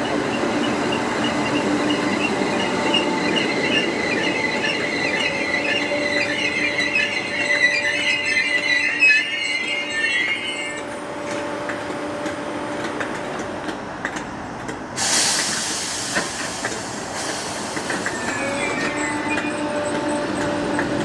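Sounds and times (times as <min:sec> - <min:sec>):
train electric hum: 0:00.0 - 0:21.0
high brake squeal: 0:02.6 - 0:10.8, 0:17.2 - 0:20.8
wheels clicking over rail joints: 0:07.2 - 0:21.0
air hiss: 0:15.0 - 0:18.9.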